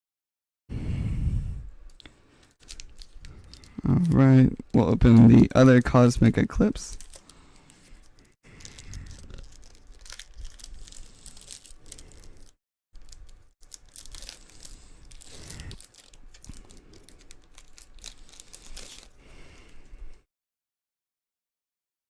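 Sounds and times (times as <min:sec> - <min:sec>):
foil wrapper crinkling and tearing: 0:02.0 - 0:20.1.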